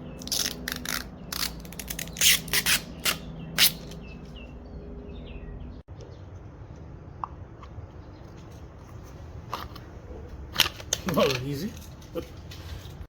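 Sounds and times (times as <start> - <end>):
small birds chirping: 0.0 - 9.1
adhesive backing peeling: 0.2 - 4.0.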